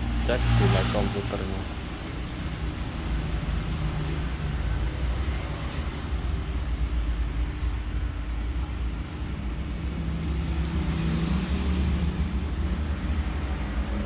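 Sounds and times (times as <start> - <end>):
passing vehicles engine rumble: 0.0 - 5.6.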